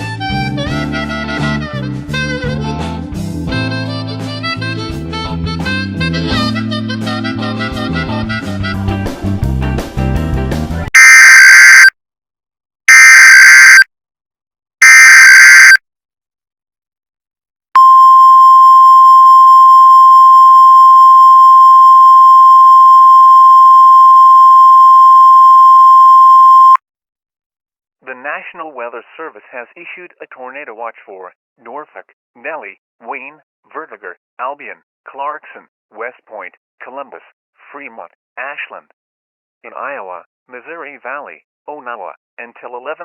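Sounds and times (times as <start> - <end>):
music: 0.0 - 10.9.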